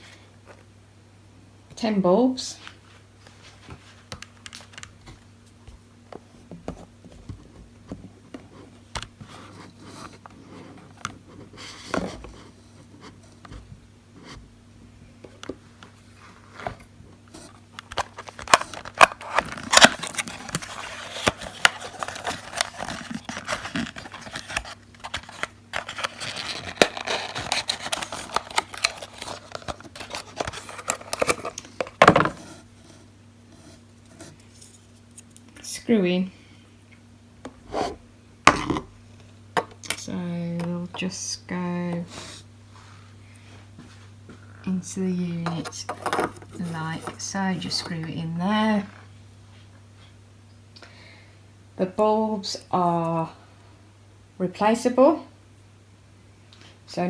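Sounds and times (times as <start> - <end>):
packaging crinkling: 17.3 - 33.0.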